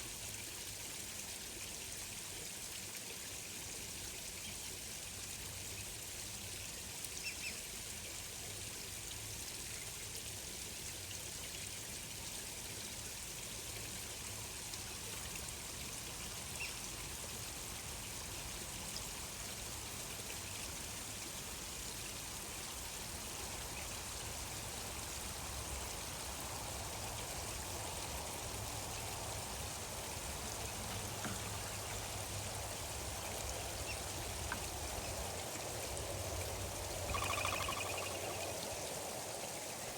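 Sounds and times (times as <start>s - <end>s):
stream water trickling: 0.0s - 39.9s
faint bird chirps: 37.1s - 38.7s.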